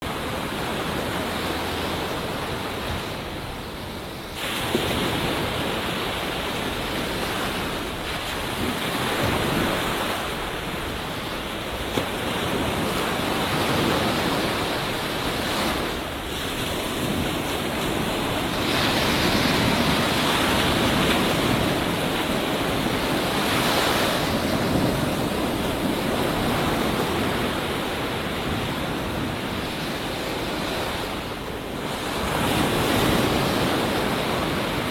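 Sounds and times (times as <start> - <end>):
waves breaking on a beach: 0.0 - 34.9.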